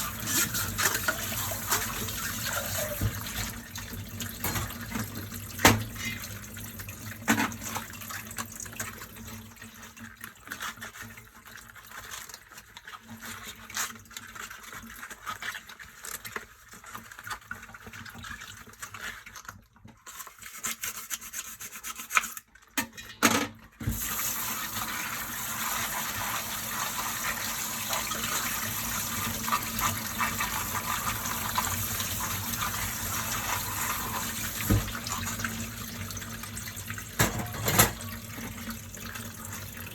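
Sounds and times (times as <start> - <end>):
tap water running: 0.0 - 16.2, 23.8 - 39.9
dishes clinking and knocking: 4.4 - 5.0, 37.2 - 38.2.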